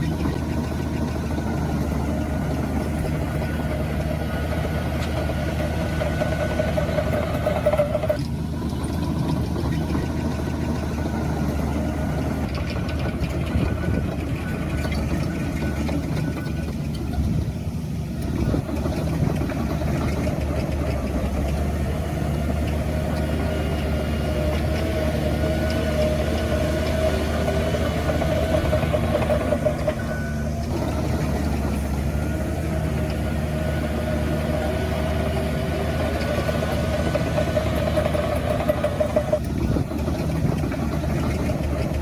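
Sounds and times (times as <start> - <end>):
heavy machinery diesel engines running: 0.0 - 42.0
high steady engine tone: 0.0 - 42.0.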